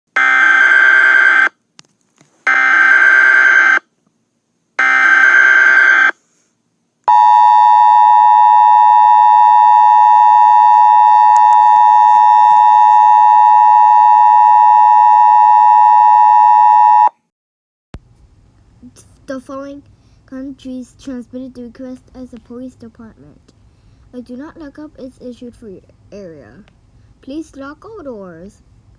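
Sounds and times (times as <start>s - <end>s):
harsh two-tone attention signal: 7.1s - 17.2s.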